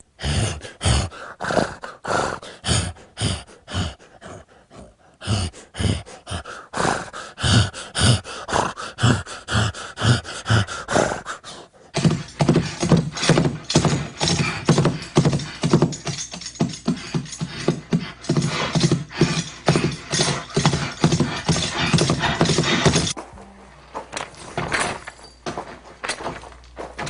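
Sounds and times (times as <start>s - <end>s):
hoofbeats clip-clopping: 12.0s - 23.2s.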